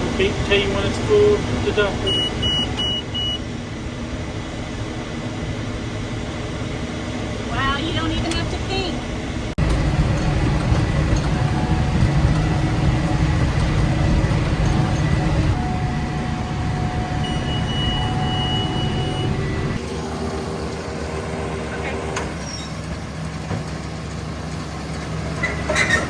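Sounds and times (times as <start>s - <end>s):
tractor and baler running: 0.0s - 26.0s
high steady beep: 2.1s - 3.4s, 17.2s - 19.4s.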